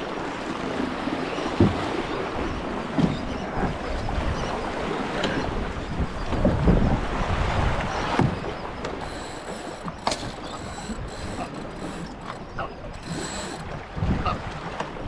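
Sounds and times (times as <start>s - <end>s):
boat fittings clicking and knocking: 8.8s - 13.9s.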